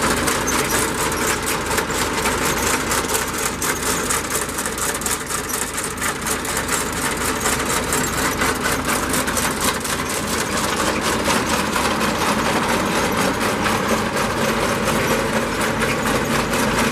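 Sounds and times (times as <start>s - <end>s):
tractor engine running: 0.0s - 16.9s.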